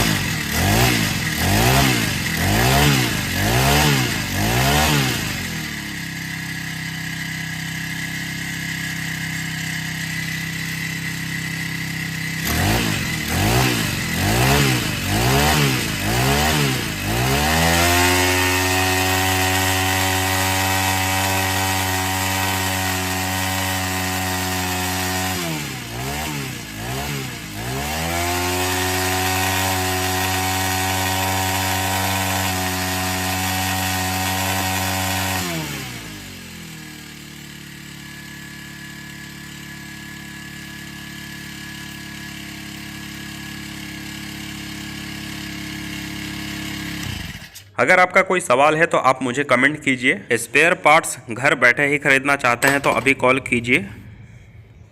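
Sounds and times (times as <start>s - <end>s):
brush cutter engine revving: 0.0s - 54.6s.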